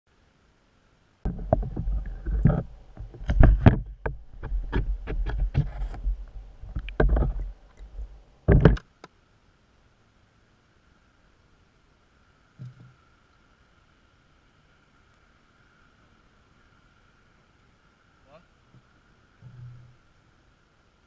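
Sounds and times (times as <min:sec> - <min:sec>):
low rumble: 0:01.3 - 0:08.7
knocks and clunks: 0:01.3 - 0:08.9.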